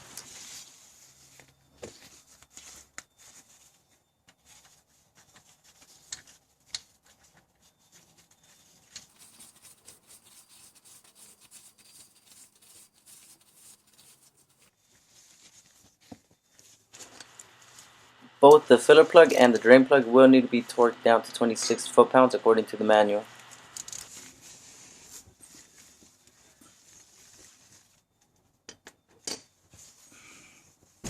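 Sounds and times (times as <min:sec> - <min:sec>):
soft wiping and rubbing: 0:00.0 - 0:20.0, 0:24.0 - 0:28.2, 0:29.7 - 0:31.0.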